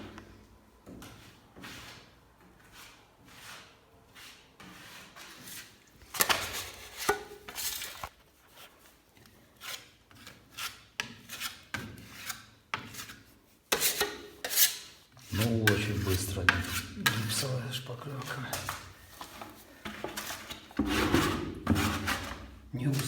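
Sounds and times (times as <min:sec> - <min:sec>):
putty knife scraping plaster: 0:01.0 - 0:08.1, 0:09.4 - 0:23.0.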